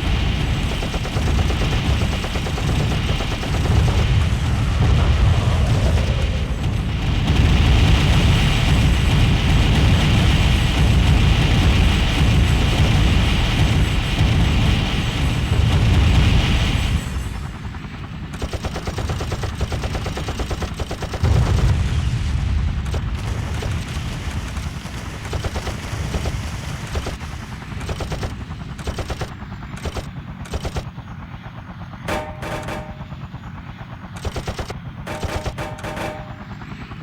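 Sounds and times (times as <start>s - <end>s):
machine-gun fire: 0.0s - 17.0s, 18.4s - 22.1s, 22.8s - 30.9s, 32.0s - 33.3s, 34.1s - 36.6s
deep rumbling booms: 2.9s - 16.8s.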